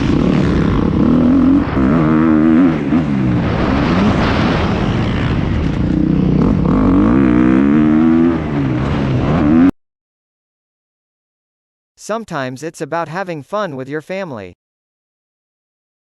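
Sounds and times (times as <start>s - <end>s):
dirt bike engines revving: 0.0s - 9.7s.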